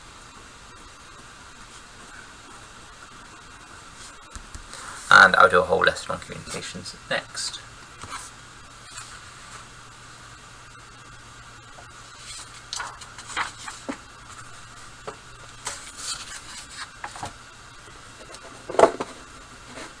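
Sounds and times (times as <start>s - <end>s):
faint steady background hum: 0.0s - 20.0s
rustling and knocking handling noises: 11.8s - 17.4s, 18.2s - 20.0s.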